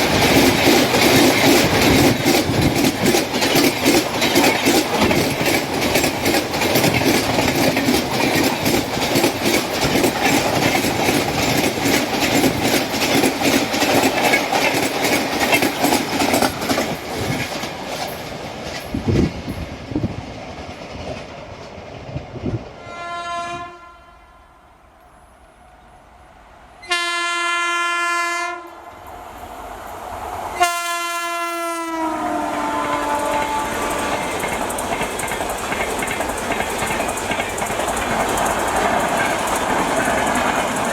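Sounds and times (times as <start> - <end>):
train wheels clattering: 0.0 - 22.8, 32.3 - 40.9
train horn blasts: 22.8 - 24.9, 26.8 - 28.8, 30.6 - 34.4.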